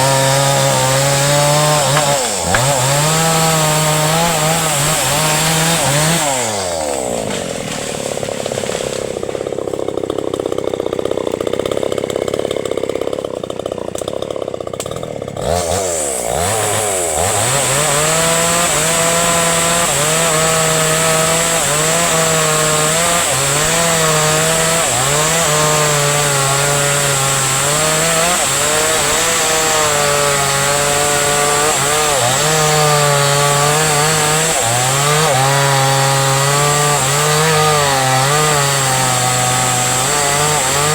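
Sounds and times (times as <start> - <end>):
chainsaw cutting wood: 0.0 - 40.9.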